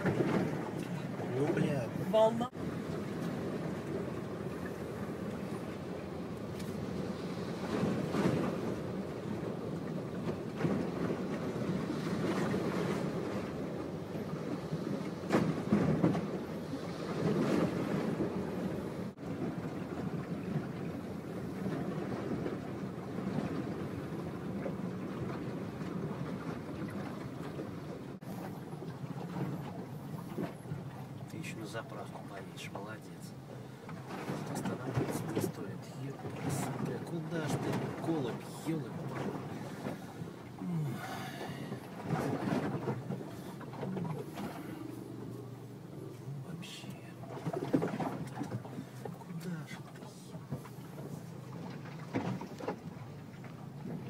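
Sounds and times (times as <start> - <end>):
car engine rumble: 12.5 - 54.0.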